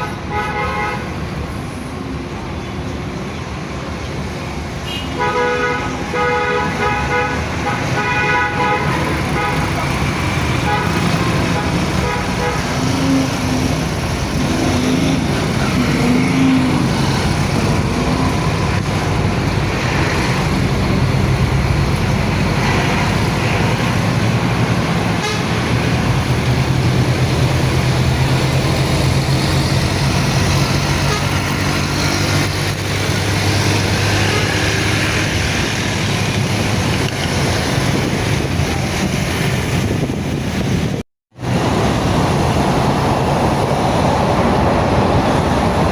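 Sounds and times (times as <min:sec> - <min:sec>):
car horns tooting: 0:04.8 - 0:13.8, 0:25.1 - 0:25.7, 0:31.0 - 0:31.6
vehicle engines running: 0:06.0 - 0:45.9.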